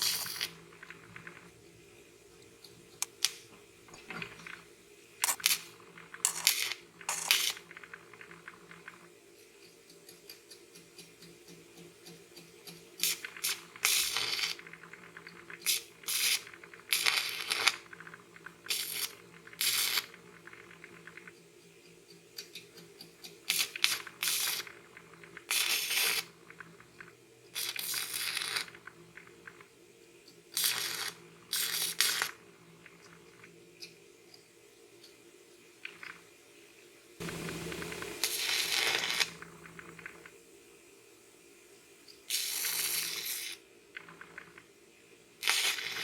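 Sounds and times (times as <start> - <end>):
welding arc crackling: 0.0 - 1.5, 5.2 - 9.0, 13.0 - 21.2, 23.5 - 26.6, 27.6 - 29.3, 30.5 - 33.1, 37.2 - 40.4, 42.3 - 44.6, 45.4 - 46.0
steady low hum: 36.7 - 42.1.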